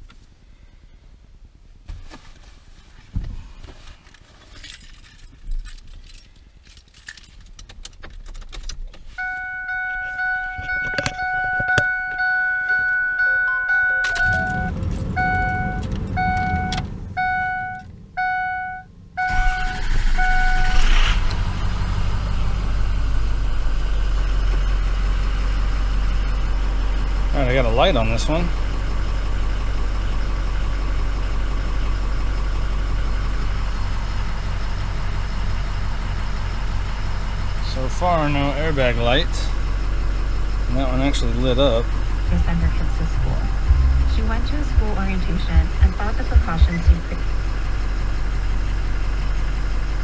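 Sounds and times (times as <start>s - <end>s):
diesel engine cranking and idling: 3.6s - 50.0s
keys jangling and clicking: 4.4s - 8.8s
truck warning chime beeps: 9.2s - 20.9s, 42.2s - 47.3s.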